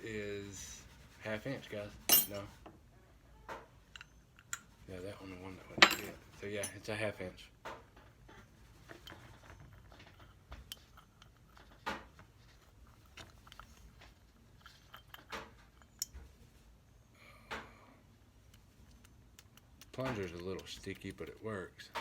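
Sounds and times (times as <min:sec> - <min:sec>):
metallic clicks of tools and parts: 0:02.1 - 0:02.4, 0:05.8 - 0:06.8.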